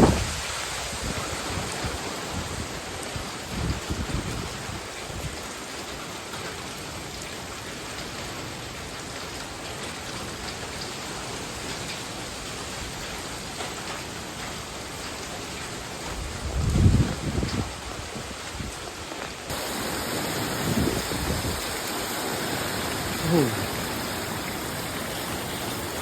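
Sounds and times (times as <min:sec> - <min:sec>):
wind buffeting microphone: 0:00.0 - 0:02.7, 0:03.4 - 0:05.4, 0:16.1 - 0:26.0
heavy rain pouring: 0:00.0 - 0:26.0.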